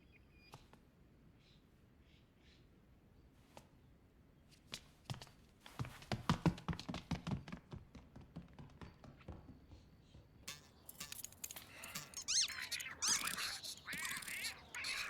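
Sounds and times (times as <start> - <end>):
hissing noise burst: 10.5 - 15.0.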